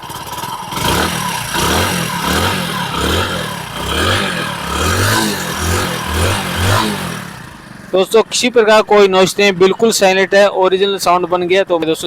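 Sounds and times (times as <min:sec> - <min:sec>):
motorcycle engine revving: 0:00.0 - 0:08.5.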